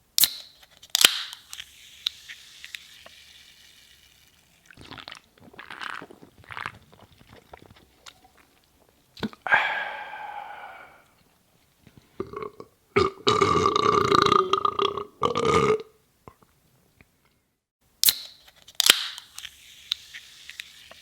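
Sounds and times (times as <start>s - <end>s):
can opening pop: 0.2s - 4.2s, 18.0s - 21.0s
soda fizzing: 1.4s - 9.2s, 19.2s - 21.0s
person gulping: 4.8s - 11.3s, 12.0s - 16.5s
person burping: 9.2s - 11.1s, 12.2s - 15.9s.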